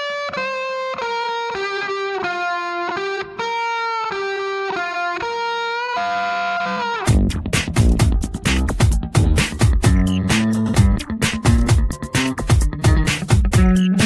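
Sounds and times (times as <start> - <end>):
lone instrument playing held notes: 9.0 - 14.0.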